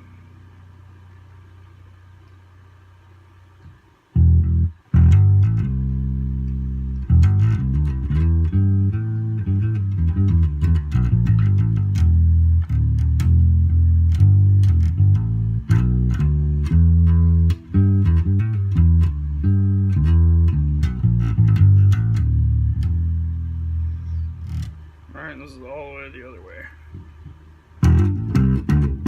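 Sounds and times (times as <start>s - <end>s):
electric bass guitar notes: 0.0s - 29.0s
faint amplifier hum: 0.0s - 29.0s.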